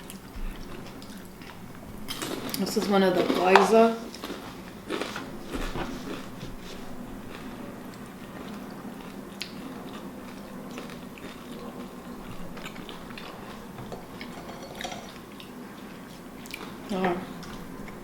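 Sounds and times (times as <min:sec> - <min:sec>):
person chewing food: 0:00.0 - 0:02.6, 0:04.1 - 0:18.0
steady low hum: 0:00.0 - 0:18.0.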